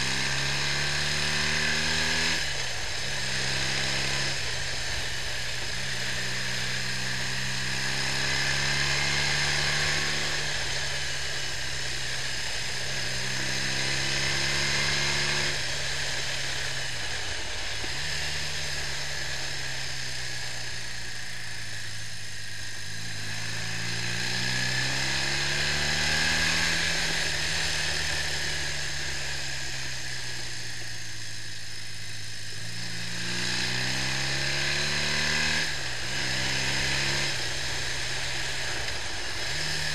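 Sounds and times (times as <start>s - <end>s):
motorcycle engine accelerating: 0.0s - 39.9s
wind and road noise hiss: 0.0s - 39.9s.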